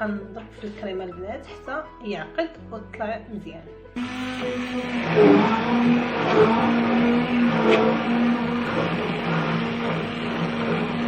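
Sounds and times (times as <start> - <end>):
electric hand mixer running: 4.0 - 11.0.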